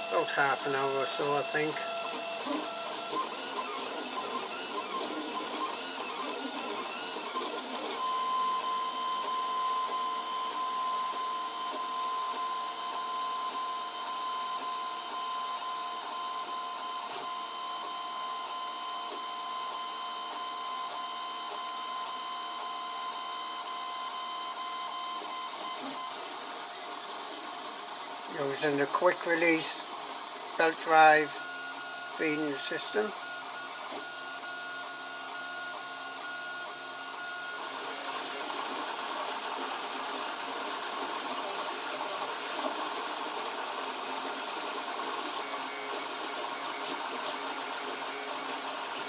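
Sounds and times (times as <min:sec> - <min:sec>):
stepper motors whirring: 0:00.0 - 0:10.6, 0:24.0 - 0:35.8.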